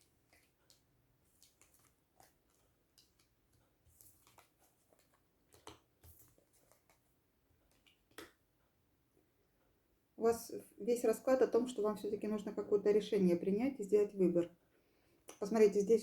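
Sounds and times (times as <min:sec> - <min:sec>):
cards tapping and rustling on table: 0:04.0 - 0:07.1.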